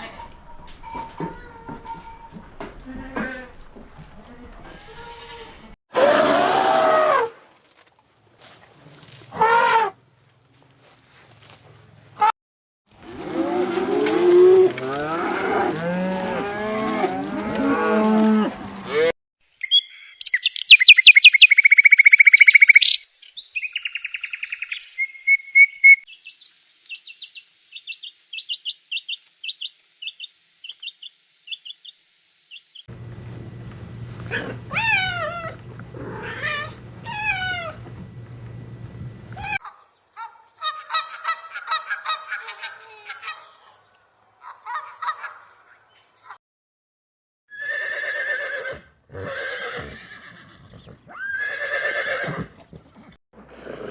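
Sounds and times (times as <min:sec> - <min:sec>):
farm bird calls: 0:00.0 - 0:05.8, 0:32.9 - 0:39.6
cow mooing: 0:00.0 - 0:07.1, 0:13.2 - 0:19.1, 0:32.9 - 0:39.6, 0:52.4 - 0:53.9
low hum: 0:32.9 - 0:39.6.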